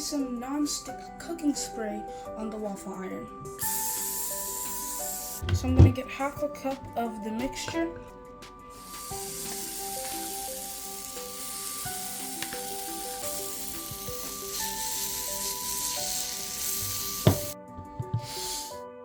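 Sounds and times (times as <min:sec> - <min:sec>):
batter sizzling in waffle iron: 0:03.6 - 0:05.6, 0:08.6 - 0:18.8.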